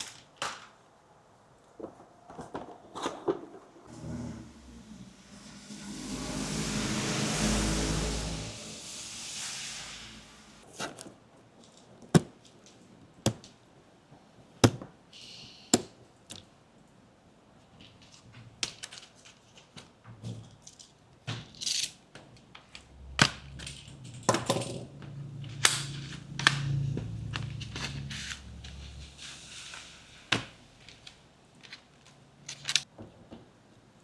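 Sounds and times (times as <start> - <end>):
rushing noise: 3.9 - 10.6.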